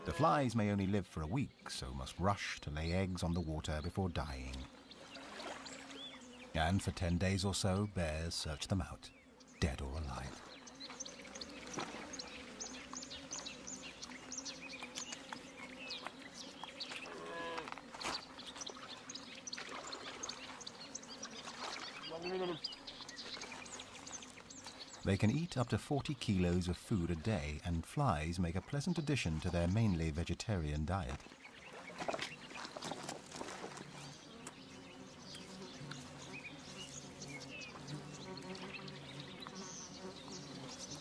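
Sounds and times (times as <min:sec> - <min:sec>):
insect swarm droning buzz: 0:00.0 - 0:29.0, 0:31.0 - 0:41.0
faint lapping water: 0:03.5 - 0:06.7, 0:10.0 - 0:25.1, 0:31.1 - 0:34.6
low-pitched animal call: 0:17.1 - 0:17.8.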